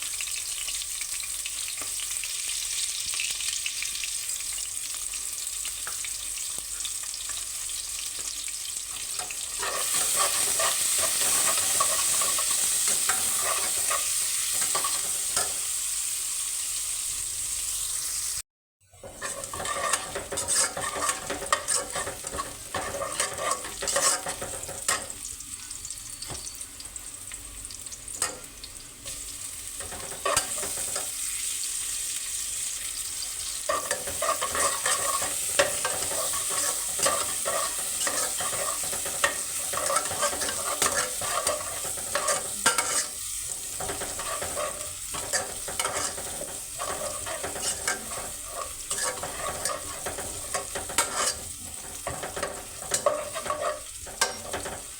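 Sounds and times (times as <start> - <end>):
vegetables sizzling in oil: 0.0 - 54.9
spatula scraping a pan: 8.9 - 15.7, 19.0 - 25.2, 28.2 - 28.5, 29.8 - 31.2, 33.3 - 54.9.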